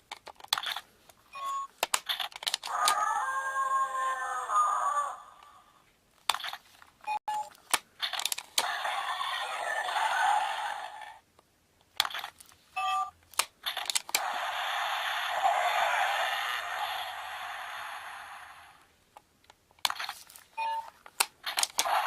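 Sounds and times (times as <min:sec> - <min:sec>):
toy parts clicking: 0:00.0 - 0:03.1, 0:07.3 - 0:09.0, 0:13.2 - 0:14.6, 0:19.2 - 0:22.0
toy sound effects from tinny speaker: 0:02.7 - 0:05.2.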